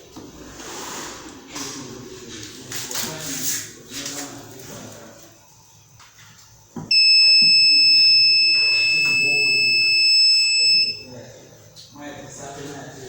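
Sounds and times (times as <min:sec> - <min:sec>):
fire alarm high-pitched tone: 0:06.9 - 0:11.1.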